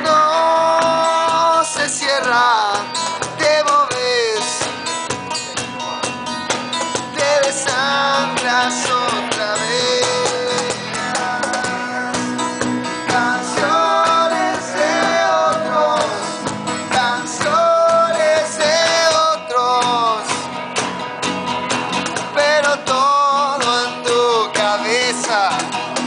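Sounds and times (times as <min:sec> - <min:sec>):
bending lead guitar melody: 0:00.0 - 0:26.0
rock band playing live: 0:00.0 - 0:26.0.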